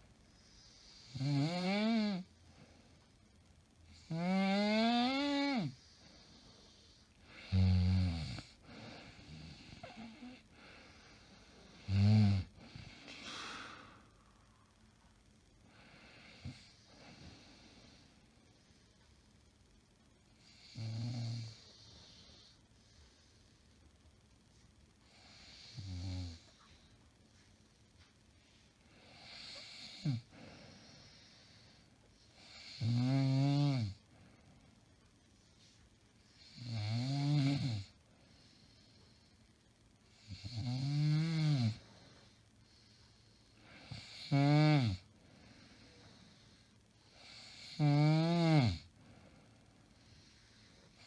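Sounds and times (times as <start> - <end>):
woman snoring: 0.6 - 2.3, 3.9 - 6.0, 6.7 - 10.5, 11.8 - 14.0, 20.4 - 22.5, 25.1 - 26.5, 29.1 - 31.4, 32.4 - 34.0, 36.4 - 38.0, 40.2 - 41.9, 43.7 - 45.1, 47.1 - 48.9.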